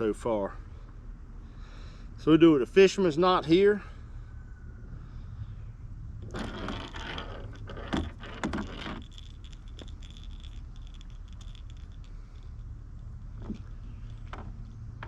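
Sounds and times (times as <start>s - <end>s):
low hum: 0.0s - 15.0s
fishing line and swivel clicks: 6.2s - 14.8s.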